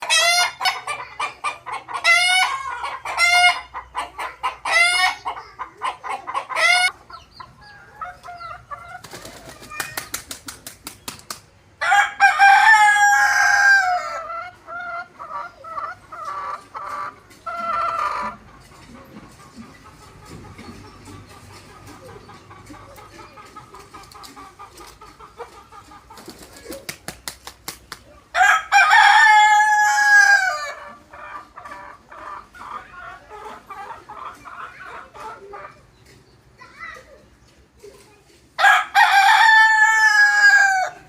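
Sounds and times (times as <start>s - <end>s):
chickens clucking: 0.0s - 41.0s
wing flapping: 9.0s - 11.6s, 26.1s - 28.1s
rooster crowing: 11.8s - 14.3s, 28.4s - 30.8s, 38.6s - 41.0s.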